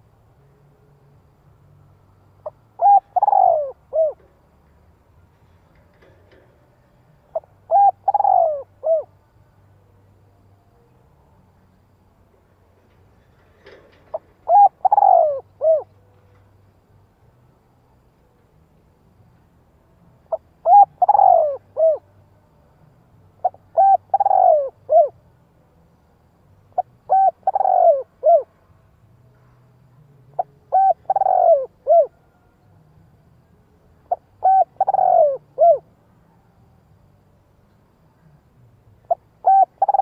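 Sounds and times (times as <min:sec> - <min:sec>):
dove cooing: 0:02.4 - 0:04.4, 0:07.2 - 0:09.2, 0:13.4 - 0:16.0, 0:20.3 - 0:22.1, 0:23.4 - 0:25.2, 0:26.7 - 0:28.5, 0:30.4 - 0:32.4, 0:34.0 - 0:35.9, 0:39.1 - 0:40.0.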